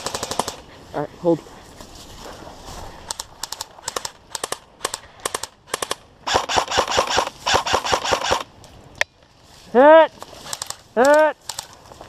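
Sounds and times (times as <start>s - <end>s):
airsoft rifles firing: 0.0s - 0.6s, 3.2s - 8.5s.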